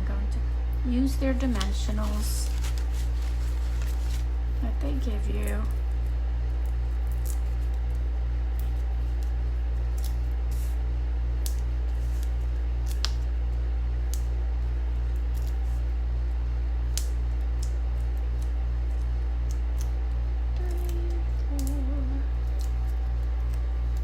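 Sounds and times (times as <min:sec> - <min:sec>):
pulsing electrical hum: 0:00.0 - 0:24.0
paper pieces rustling and ticking: 0:01.4 - 0:04.3.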